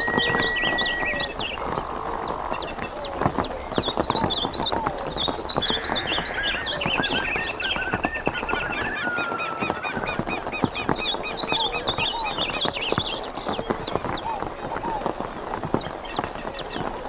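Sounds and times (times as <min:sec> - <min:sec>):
scattered whistles: 0:00.0 - 0:01.6, 0:05.2 - 0:13.1
birds calling and chirping: 0:00.0 - 0:17.0
patter of small sharp ticks: 0:00.1 - 0:07.2.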